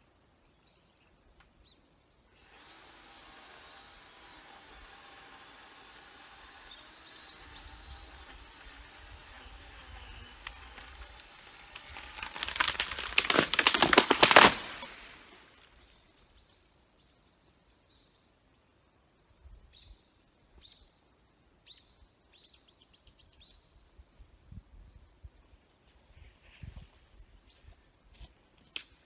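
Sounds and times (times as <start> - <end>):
tree branches cracking and snapping: 10.2 - 15.7.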